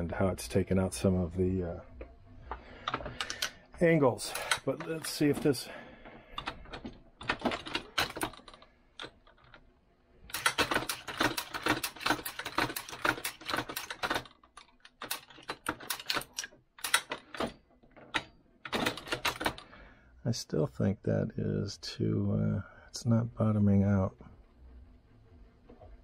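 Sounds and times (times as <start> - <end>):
reloading press metallic clicking: 10.3 - 19.6.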